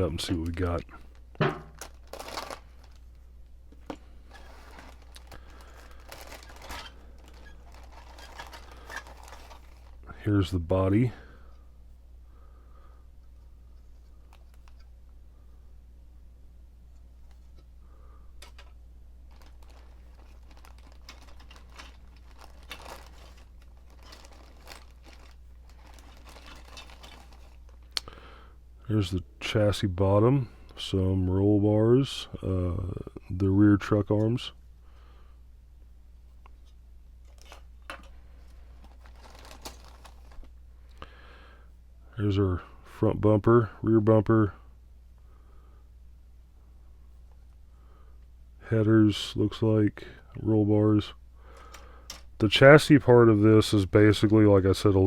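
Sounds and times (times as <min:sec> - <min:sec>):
plastic wrapping crinkling: 0:00.0 - 0:03.2, 0:03.8 - 0:10.1, 0:18.4 - 0:28.1, 0:37.2 - 0:40.6.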